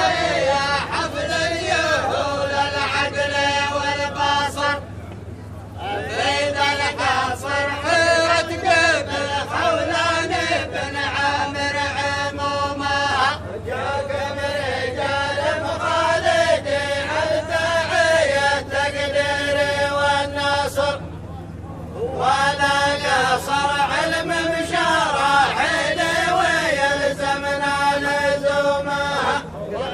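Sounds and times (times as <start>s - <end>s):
men chanting melodic phrases: 22.0s - 29.9s.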